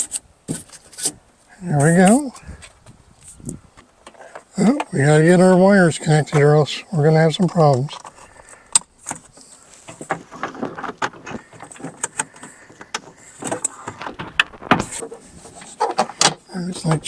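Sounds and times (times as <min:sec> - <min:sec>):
plastic trim panel rustling: 0:07.4 - 0:17.0.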